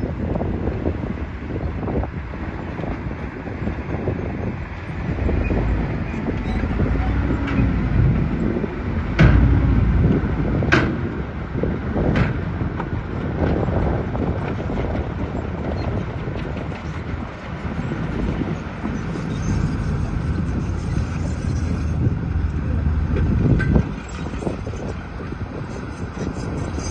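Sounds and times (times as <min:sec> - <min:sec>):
heavy machinery engine rumble: 0:00.1 - 0:26.9
sharp knocks: 0:06.2 - 0:12.9.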